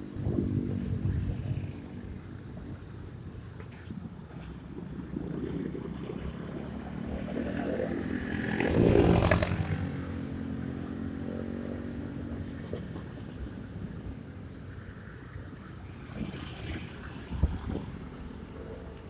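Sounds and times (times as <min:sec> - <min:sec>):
louder passing vehicle: 0:05.2 - 0:12.3.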